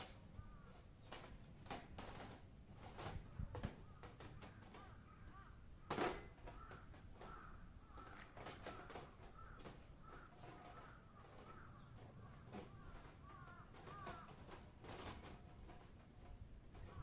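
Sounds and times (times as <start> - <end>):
crows cawing: 0.4 - 0.8, 3.8 - 14.6.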